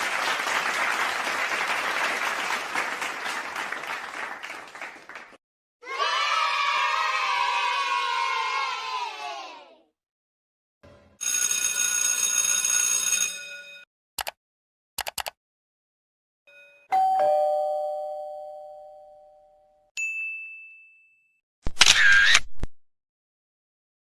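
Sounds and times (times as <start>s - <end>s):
short clicks: 15.0s - 15.4s
high ding: 16.5s - 21.4s
two-note doorbell chime: 16.5s - 21.4s.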